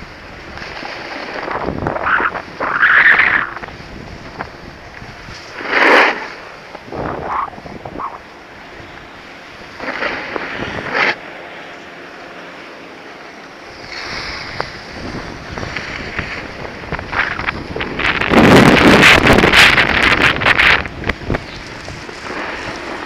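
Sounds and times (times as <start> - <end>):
skis sliding on snow: 0.0 - 6.7, 9.6 - 11.2, 13.7 - 23.0
wind buffeting microphone: 0.0 - 11.2, 13.7 - 23.0.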